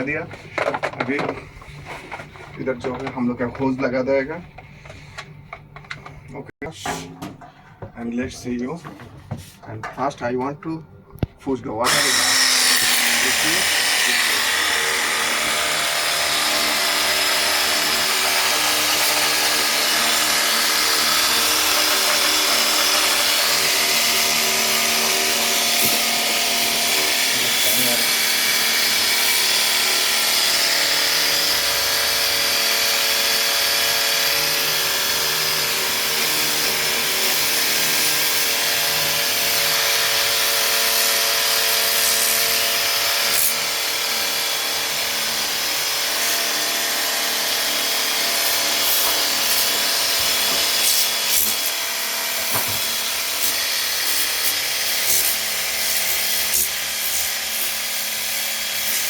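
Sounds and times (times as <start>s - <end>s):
pressure washer motor running: 11.9s - 30.1s.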